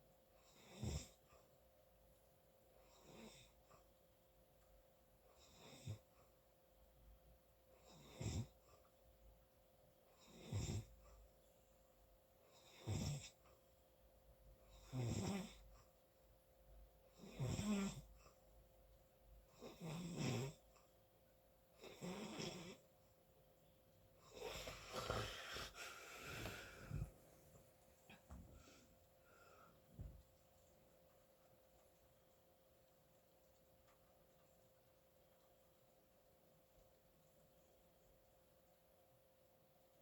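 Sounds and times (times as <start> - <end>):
person snoring: 24.2 - 27.1.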